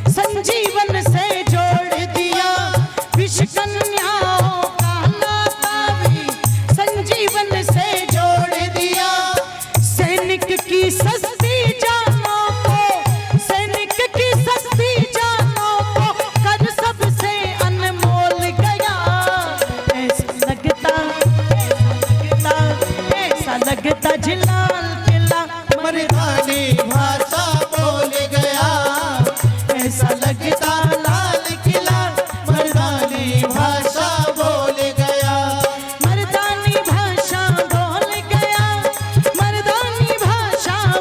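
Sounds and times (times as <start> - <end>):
steady drum beat: 0.0 - 41.0.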